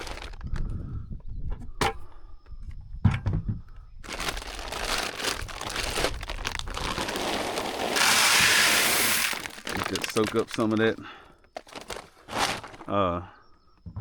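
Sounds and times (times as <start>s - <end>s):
plastic bag crinkling: 0.0s - 0.5s, 4.0s - 13.0s.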